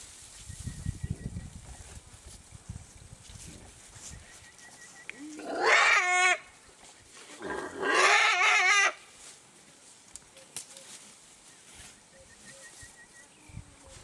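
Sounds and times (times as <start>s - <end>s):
elephant calf squealing: 5.2s - 6.5s.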